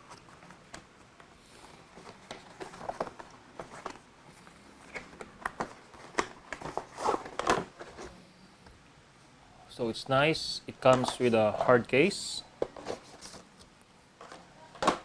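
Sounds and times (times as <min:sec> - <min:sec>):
cardboard packaging being handled: 0:00.0 - 0:08.2.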